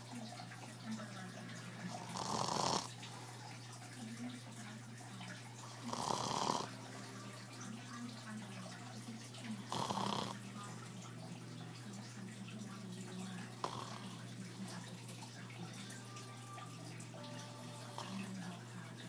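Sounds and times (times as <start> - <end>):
person snoring: 1.9 - 2.9, 5.7 - 6.8, 9.7 - 10.4, 13.6 - 14.2.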